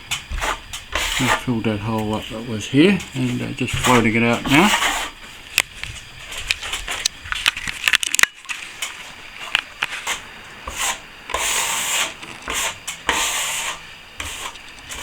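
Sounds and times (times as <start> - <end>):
trowel scraping plaster: 0.3 - 1.5, 3.7 - 5.2, 9.9 - 15.0.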